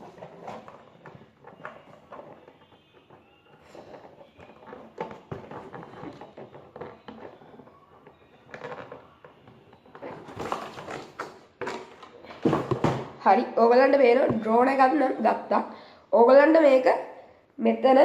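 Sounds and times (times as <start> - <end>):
plastic packaging clicking and rustling: 0.0 - 13.2.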